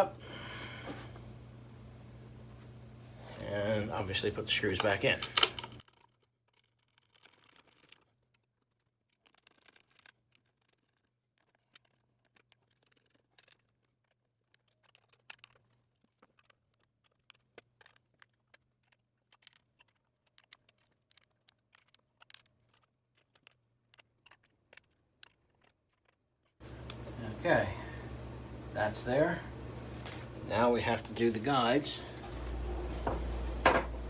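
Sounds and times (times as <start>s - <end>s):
faint low hum: 0.0s - 5.8s, 26.6s - 34.0s.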